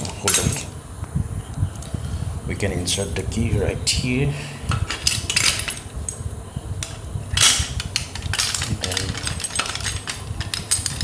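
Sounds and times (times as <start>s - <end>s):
key scraping in lock: 4.8s - 11.0s.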